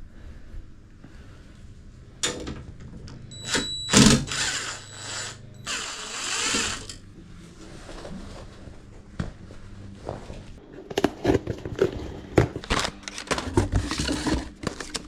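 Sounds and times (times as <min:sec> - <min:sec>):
mechanical noise bursts: 0:03.4 - 0:07.0.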